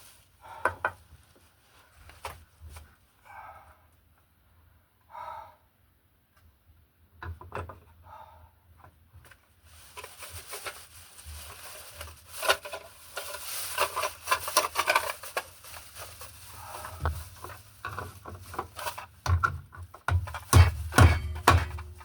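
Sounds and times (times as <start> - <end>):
rustling and scraping: 0.0 - 3.1, 9.2 - 22.0
dull thumps: 19.2 - 22.0.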